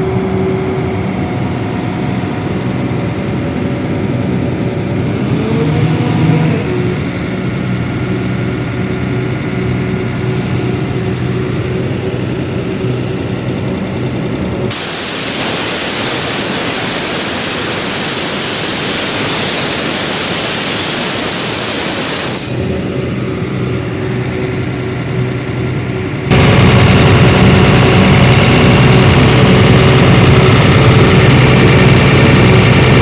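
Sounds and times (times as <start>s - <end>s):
diesel engine running: 0.0s - 33.0s
loud air hiss: 14.7s - 25.3s.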